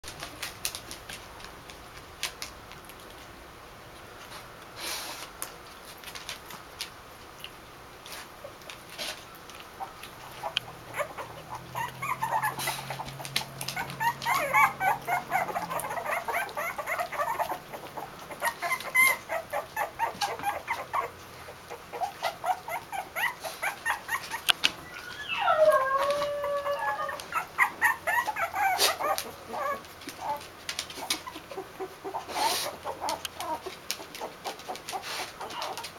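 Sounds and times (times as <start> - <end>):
puppies squeaking and whimpering: 9.6 - 35.9.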